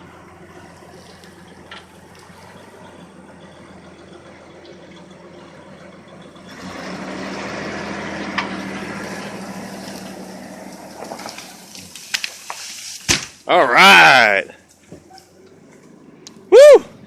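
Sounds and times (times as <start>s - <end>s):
pickup truck engine pulling: 0.0s - 17.0s
sharp wood crack: 8.3s - 13.5s.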